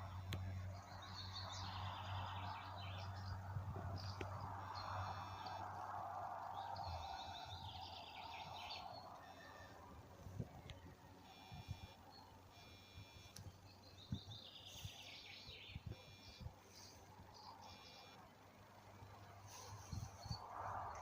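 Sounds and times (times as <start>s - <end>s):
rushing background noise: 0.0s - 21.0s
songbirds singing: 0.0s - 21.0s
bird calls: 0.4s - 9.8s.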